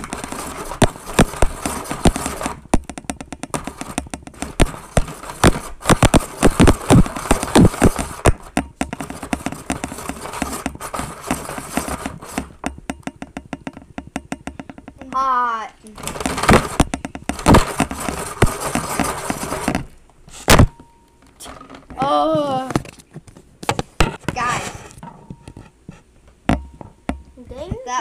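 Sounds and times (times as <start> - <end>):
toy snow cone maker crunching ice: 0.0 - 2.8, 3.5 - 12.6, 15.1 - 19.9.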